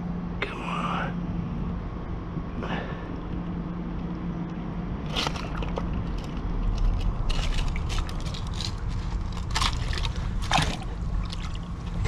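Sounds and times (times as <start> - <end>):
steady low rumble: 0.0 - 12.0
rope crackling and scraping: 5.0 - 12.0.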